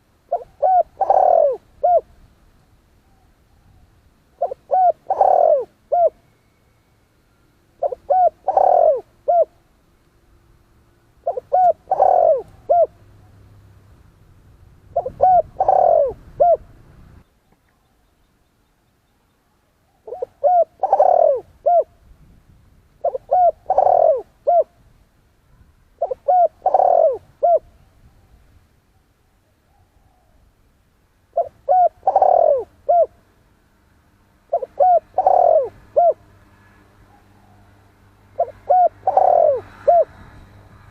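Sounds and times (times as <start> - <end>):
dove cooing: 0.0 - 2.2, 3.0 - 6.2, 7.8 - 9.6, 11.2 - 13.1, 14.9 - 16.8, 20.0 - 22.0, 23.0 - 24.7, 26.0 - 27.8, 31.3 - 33.2, 34.5 - 36.2, 37.1 - 40.3.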